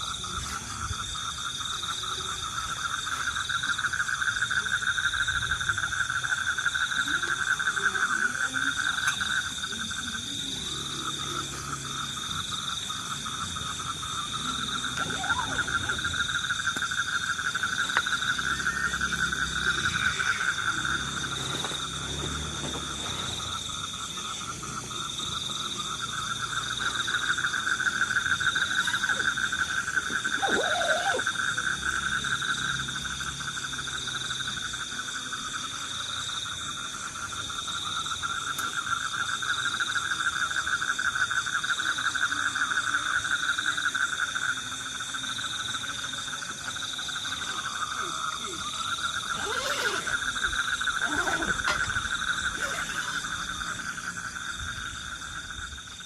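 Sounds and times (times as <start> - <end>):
frogs and insects trilling: 0.0 - 56.0
short rising calls: 49.3 - 53.8.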